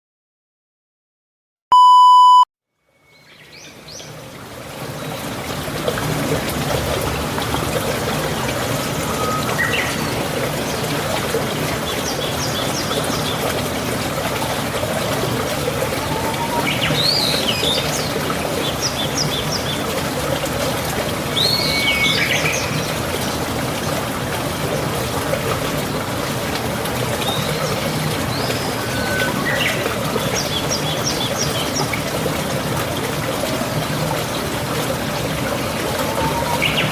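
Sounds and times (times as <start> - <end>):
brief beep: 1.7 - 2.5
water trickling: 3.2 - 36.9
birds chirping: 15.0 - 20.0, 27.1 - 31.9, 35.8 - 36.9.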